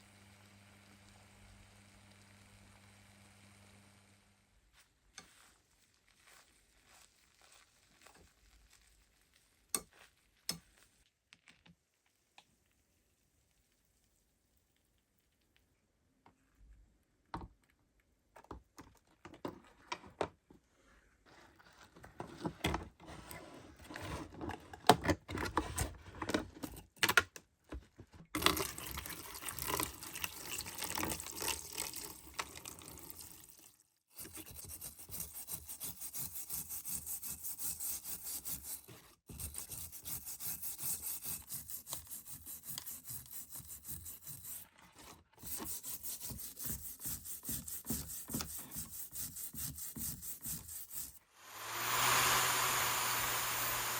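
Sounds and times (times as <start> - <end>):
scrubbing rust: 34.1 - 51.2.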